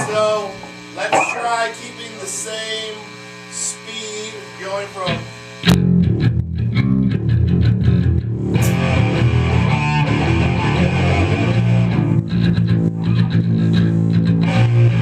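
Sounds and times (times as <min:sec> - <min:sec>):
bass guitar: 0:00.0 - 0:01.5, 0:05.1 - 0:15.0
electric guitar: 0:00.0 - 0:01.7, 0:05.1 - 0:15.0.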